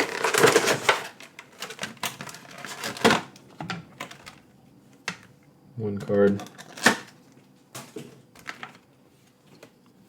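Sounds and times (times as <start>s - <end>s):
cardboard and plastic rustling: 0.0s - 4.4s, 6.2s - 9.8s.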